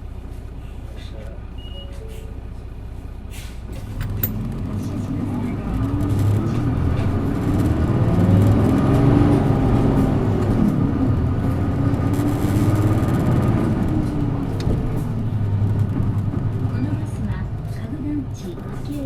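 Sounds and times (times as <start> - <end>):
bus diesel engine running: 0.0 - 19.0.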